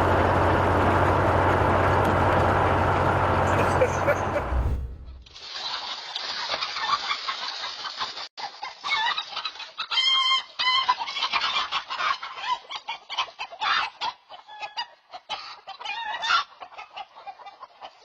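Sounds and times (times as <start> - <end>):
chickens clucking and squawking: 3.4 - 4.5, 6.6 - 18.0.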